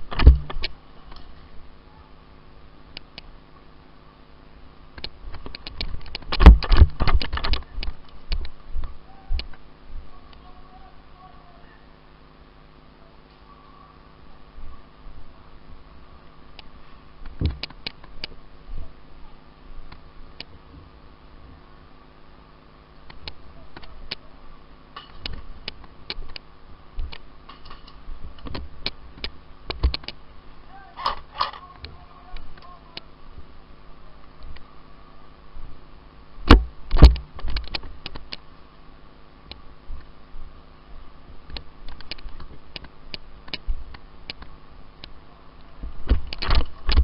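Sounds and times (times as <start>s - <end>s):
sharp clicks and knocks: 0.0s - 1.3s, 5.0s - 8.6s, 16.6s - 18.4s, 25.0s - 30.2s, 36.5s - 38.4s, 41.4s - 45.2s, 46.0s - 47.0s.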